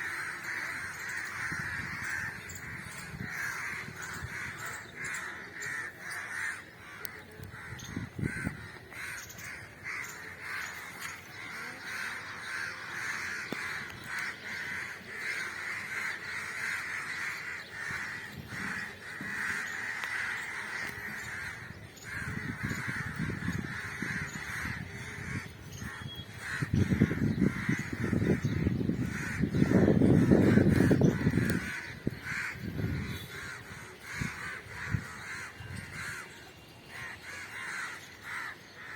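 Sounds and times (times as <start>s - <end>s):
flock of birds calling: 0.0s - 38.9s.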